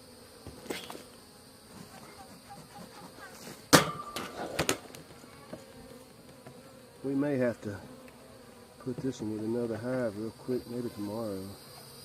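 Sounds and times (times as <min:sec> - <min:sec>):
honeybees buzzing: 0:00.0 - 0:12.0.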